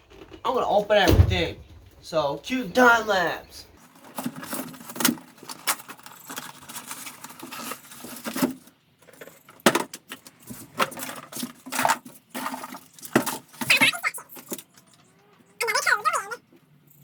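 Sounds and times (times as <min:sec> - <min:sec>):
tools and packaging being handled: 0:03.8 - 0:15.5.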